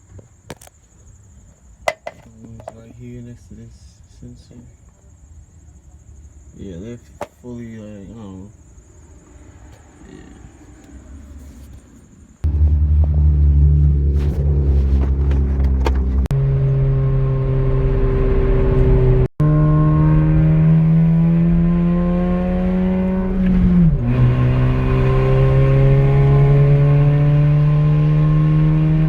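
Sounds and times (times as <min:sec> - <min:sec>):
car engine accelerating: 0:12.4 - 0:29.0.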